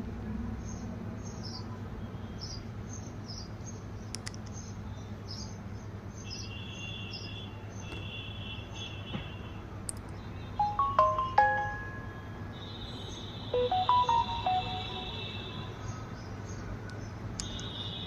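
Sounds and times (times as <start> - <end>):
steady high tone: 10.6 - 12.3, 13.6 - 15.7.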